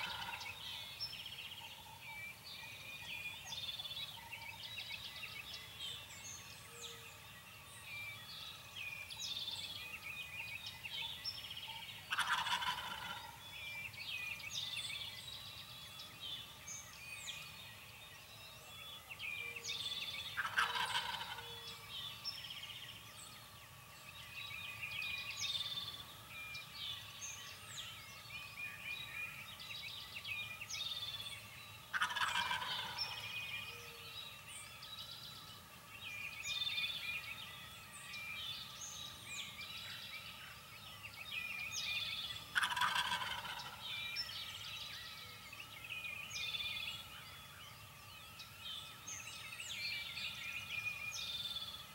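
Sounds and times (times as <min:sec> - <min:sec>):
turkey gobbling: 0:00.0 - 0:00.4, 0:12.1 - 0:13.3, 0:20.4 - 0:21.4, 0:31.9 - 0:33.2, 0:42.6 - 0:43.8
songbirds chirping: 0:00.0 - 0:51.9.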